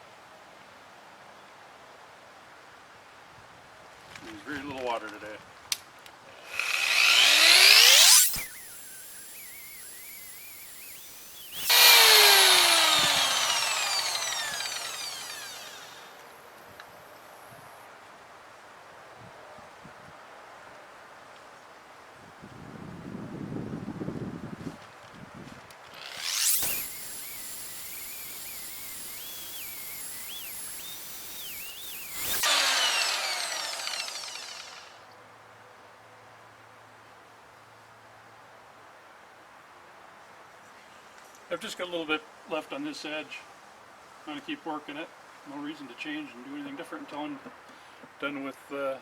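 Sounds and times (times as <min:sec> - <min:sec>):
grinder whine winding down: 0:06.4 - 0:16.4, 0:26.0 - 0:35.0
loud burst: 0:06.6 - 0:16.1.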